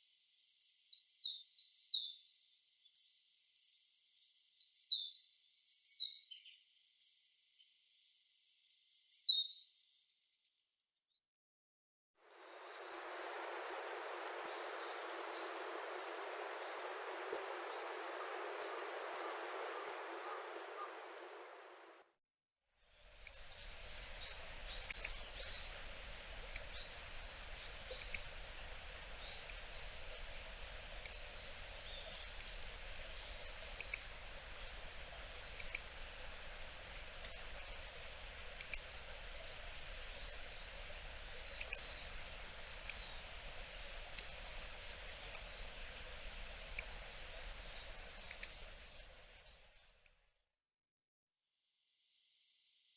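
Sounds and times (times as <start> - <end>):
bird giving sharp high calls: 12.3 - 21.9.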